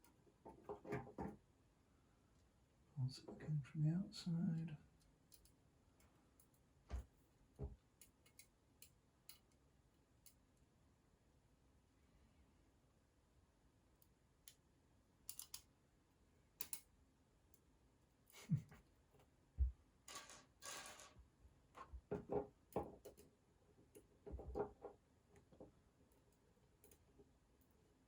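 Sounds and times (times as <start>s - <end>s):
metal parts clicking: 15.3s - 15.6s.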